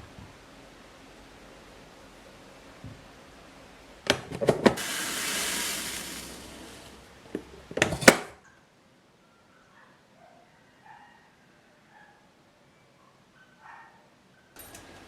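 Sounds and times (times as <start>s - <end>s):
hiss: 4.8s - 7.2s.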